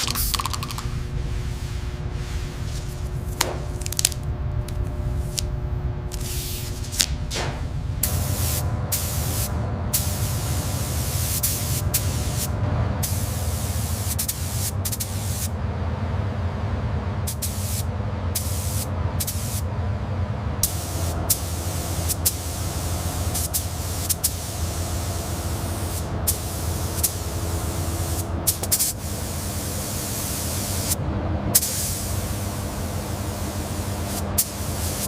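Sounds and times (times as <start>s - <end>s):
air spray gun hissing: 0.0s - 0.8s, 6.1s - 7.1s, 8.0s - 15.5s, 17.3s - 19.6s, 20.6s - 31.0s, 31.6s - 35.0s
steady low hum: 0.0s - 35.0s.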